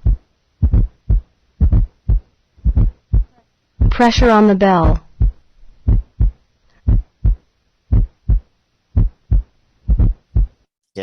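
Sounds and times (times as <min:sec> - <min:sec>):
heartbeat through stethoscope: 0:00.0 - 0:10.6.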